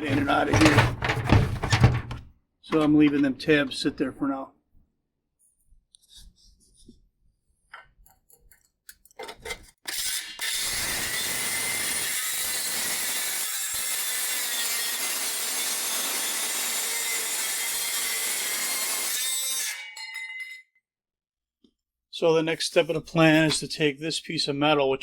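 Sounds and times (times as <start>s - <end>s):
handling knocks and clatters: 0.0s - 3.2s
power tool cutting: 9.9s - 19.8s.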